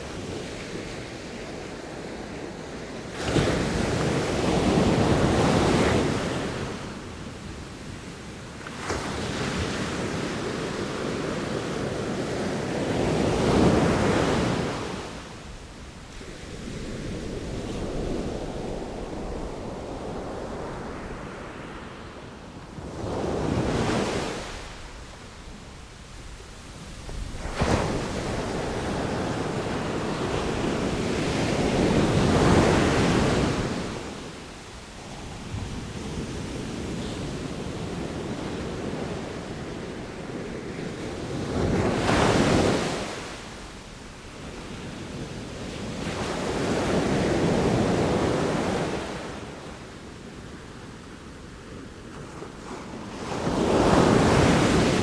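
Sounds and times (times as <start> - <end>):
sea waves breaking ashore: 26.5 - 34.5.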